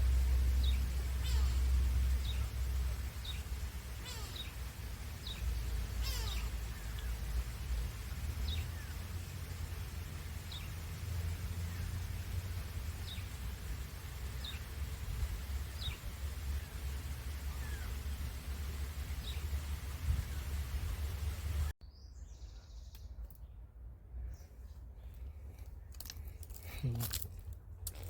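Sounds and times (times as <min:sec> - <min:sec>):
bird giving falling calls: 0:00.0 - 0:21.7
low rumble: 0:00.0 - 0:21.8.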